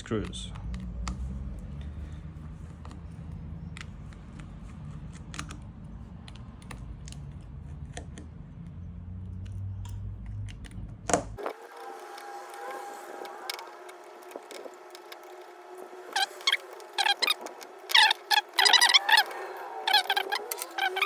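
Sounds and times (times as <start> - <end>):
screwdriver clicks and scrapes: 11.4 - 21.0.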